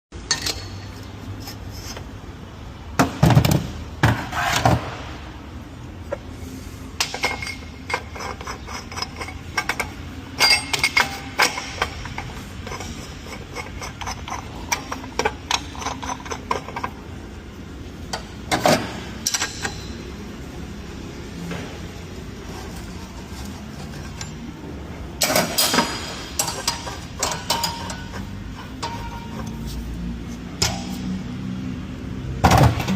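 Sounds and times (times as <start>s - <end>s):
tools and metal parts clinking: 0.2s - 2.0s, 7.0s - 17.2s, 18.1s - 20.3s, 22.4s - 30.0s.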